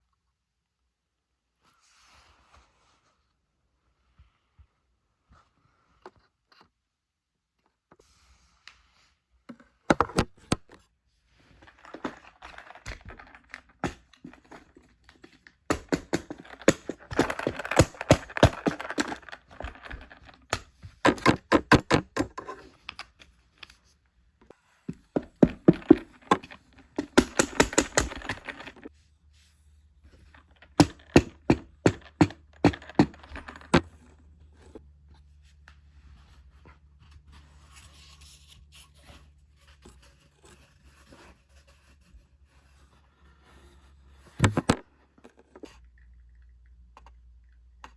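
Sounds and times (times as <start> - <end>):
rapid sharp clicks and taps: 25.4 - 28.7.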